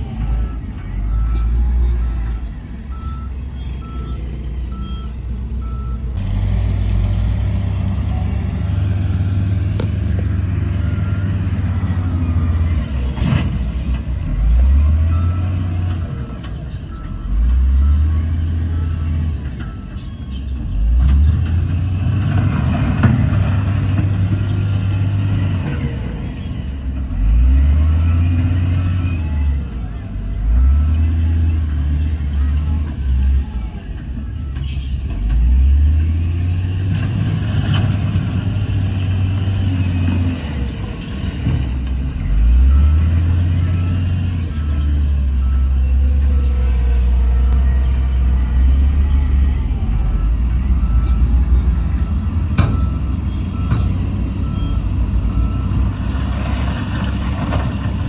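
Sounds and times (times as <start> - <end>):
reversing beeper: 0.0 - 57.7
heavy diesel machinery engine: 0.0 - 58.0.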